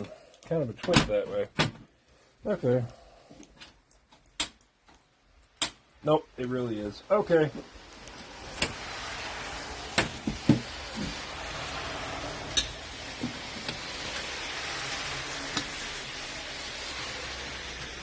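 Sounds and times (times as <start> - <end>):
camp stove clicks and knocks: 5.6 - 5.8.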